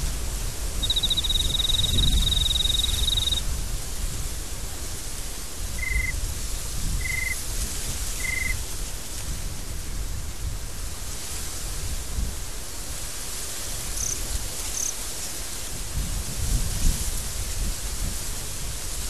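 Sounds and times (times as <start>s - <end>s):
wind rumbling: 0.0s - 10.1s
high-pitched animal trill: 0.8s - 3.4s, 5.8s - 6.1s, 7.0s - 7.4s, 8.2s - 8.6s
low buzzing animal calls: 0.8s - 3.4s, 5.8s - 6.2s, 7.0s - 7.4s, 8.2s - 8.6s.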